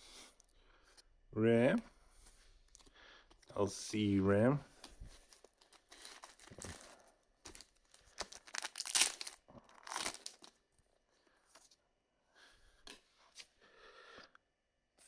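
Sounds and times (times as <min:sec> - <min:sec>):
foil wrapper crinkling and tearing: 0:05.3 - 0:10.6.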